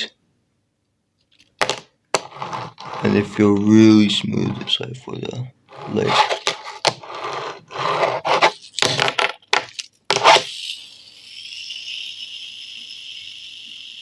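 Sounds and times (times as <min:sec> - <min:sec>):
fingerboard clattering and scraping: 0:01.6 - 0:03.6, 0:05.7 - 0:10.4
wheel spinning whir: 0:10.2 - 0:14.0.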